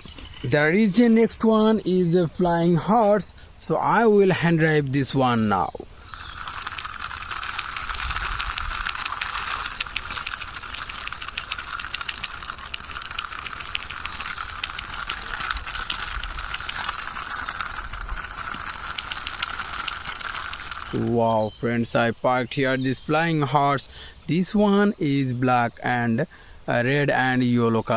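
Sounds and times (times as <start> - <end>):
plastic toy clicking rattle: 6.0 - 21.1.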